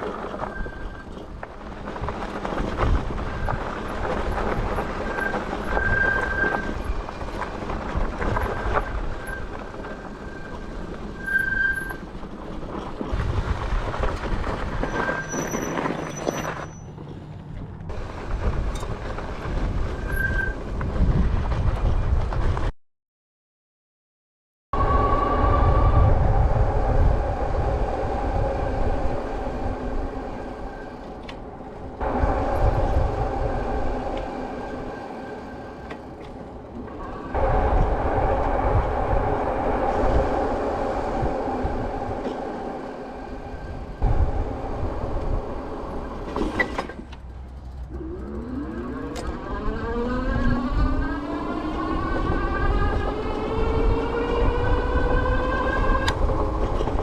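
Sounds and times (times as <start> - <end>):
tire rumble: 0.0 - 22.7, 24.8 - 57.0
wind buffeting camera: 0.0 - 22.7, 24.8 - 57.0.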